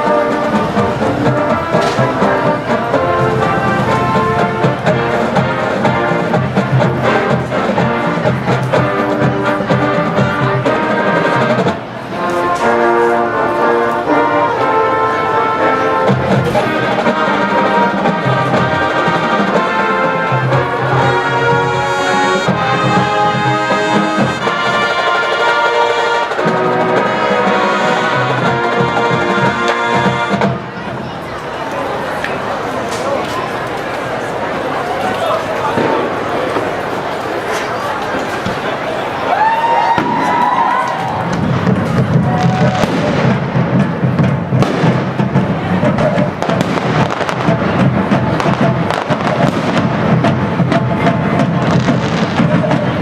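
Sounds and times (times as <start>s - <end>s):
brass ensemble playing chords: 0.0s - 30.7s, 41.4s - 53.0s.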